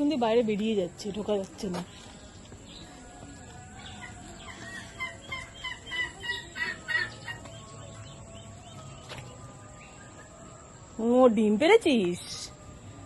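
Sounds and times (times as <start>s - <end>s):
hen clucking: 2.8s - 10.3s.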